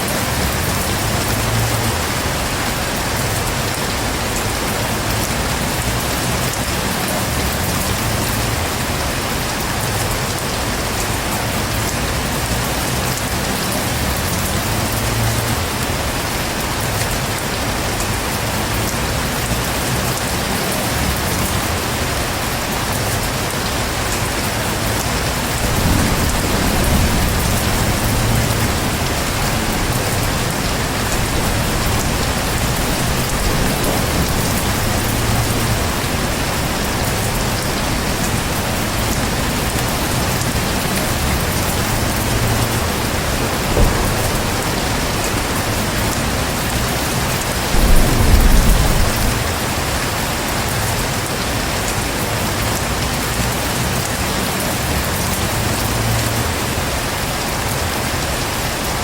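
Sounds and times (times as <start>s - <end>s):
heavy rain pouring: 0.0s - 59.0s
low thunder rumble: 24.5s - 51.1s.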